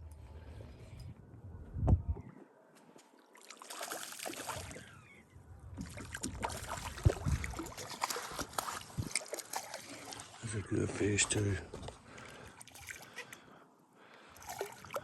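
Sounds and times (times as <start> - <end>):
water splashing: 3.3 - 4.9, 5.8 - 13.4, 14.3 - 15.0.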